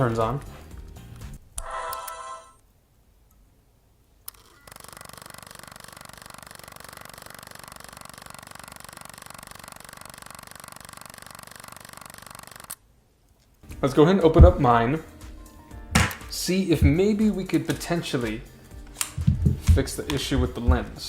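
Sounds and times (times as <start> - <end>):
lens motor whirring and ticking: 4.3 - 12.8.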